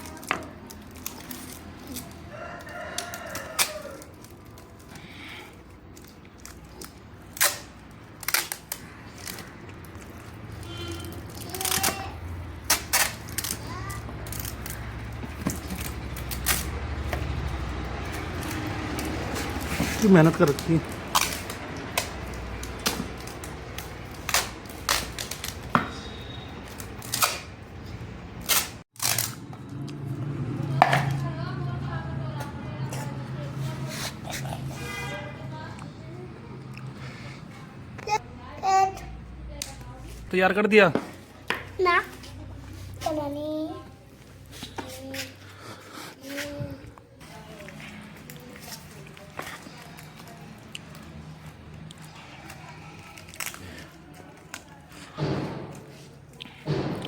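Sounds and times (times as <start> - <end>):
plastic tape crackling: 0.0 - 25.8, 28.4 - 29.4, 47.3 - 55.0
rooster crowing: 2.2 - 4.2.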